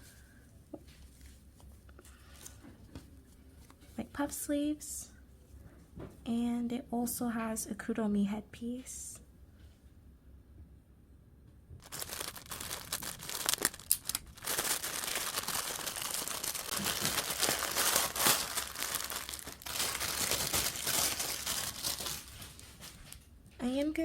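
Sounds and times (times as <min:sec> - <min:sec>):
plastic bags crinkling: 0:11.8 - 0:23.3.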